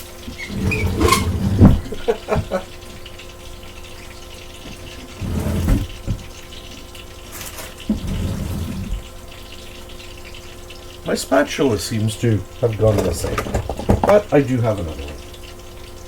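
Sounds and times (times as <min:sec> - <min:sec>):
kitchen utensils clattering: 0:00.0 - 0:02.7, 0:04.7 - 0:06.3, 0:07.5 - 0:09.1, 0:12.7 - 0:15.3
pancakes sizzling in oil: 0:01.8 - 0:05.2, 0:06.0 - 0:08.1, 0:08.9 - 0:16.0.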